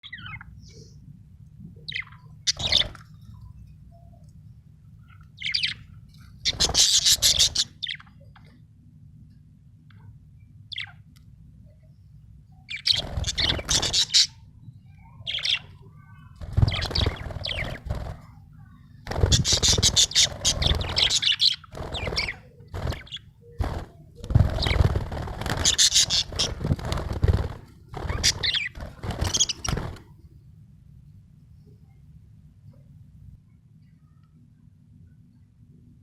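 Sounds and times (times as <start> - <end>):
steady low hum: 0.0 - 36.0
budgerigar chirping: 6.5 - 8.0, 12.7 - 14.4, 19.3 - 23.2, 25.6 - 26.6.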